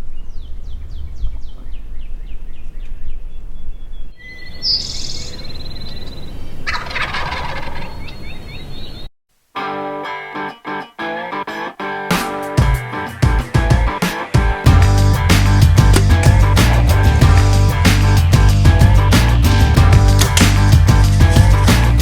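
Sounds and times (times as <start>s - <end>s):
low wind rumble: 0.0s - 6.7s
songbird chirps: 0.0s - 9.1s
turkey gobbling: 6.7s - 8.2s
music: 9.6s - 22.0s.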